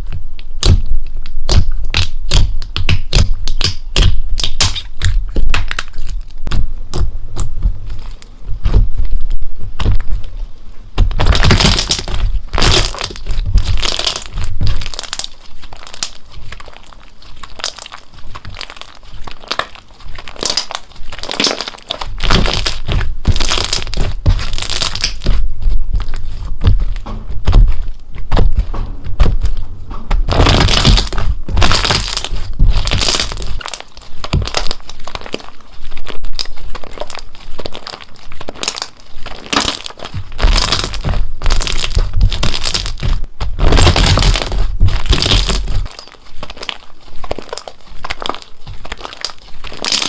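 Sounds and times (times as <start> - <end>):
slime popping and clicking: 0.4 - 7.5, 17.5 - 25.4.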